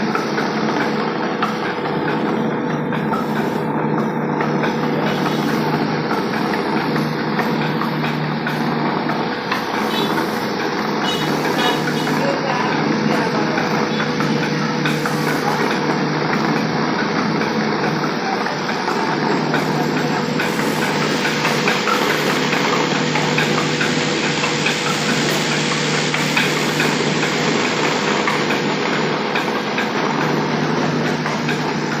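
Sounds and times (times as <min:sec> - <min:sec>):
grain mill running: 0:00.0 - 0:32.0.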